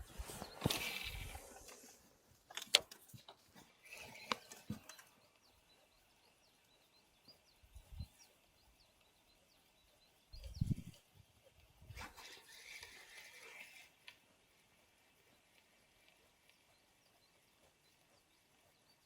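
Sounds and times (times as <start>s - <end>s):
small bird chirping: 0.0s - 2.1s, 3.0s - 19.0s
rustling handling noise: 0.0s - 5.0s.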